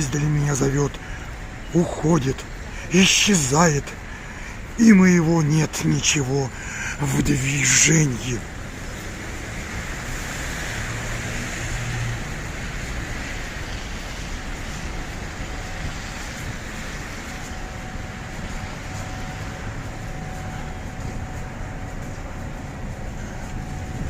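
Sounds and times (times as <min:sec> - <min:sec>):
rumble and hiss of vehicles: 0:00.0 - 0:24.0
faint steady tone: 0:12.4 - 0:24.0.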